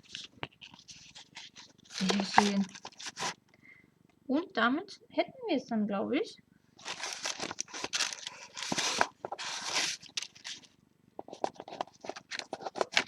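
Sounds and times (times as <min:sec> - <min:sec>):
paper and packaging rustling: 0:00.0 - 0:03.4, 0:06.8 - 0:13.0.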